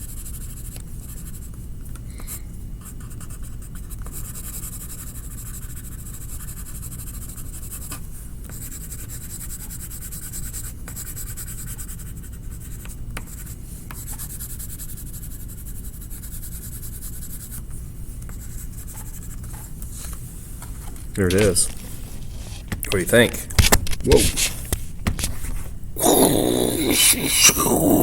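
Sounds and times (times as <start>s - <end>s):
low steady hum: 0.0s - 28.0s
coloring tool scribbling on paper: 2.8s - 17.6s.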